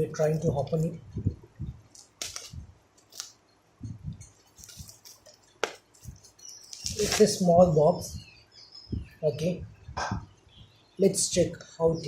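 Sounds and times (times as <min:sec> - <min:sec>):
packaging rustling: 0:01.9 - 0:03.4, 0:04.3 - 0:07.4
box packaging taps and clicks: 0:05.6 - 0:05.8.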